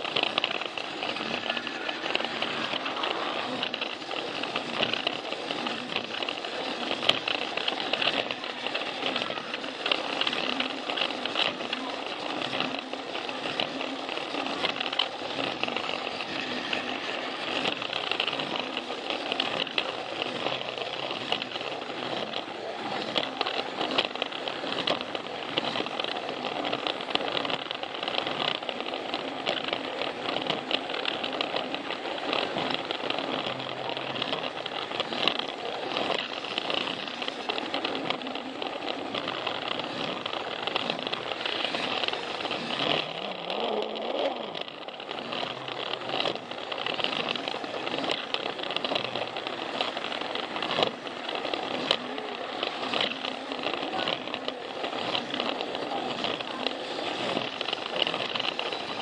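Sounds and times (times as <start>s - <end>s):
ticks on plastic track: 0.0s - 59.0s
toy train motor whirring: 0.0s - 59.0s.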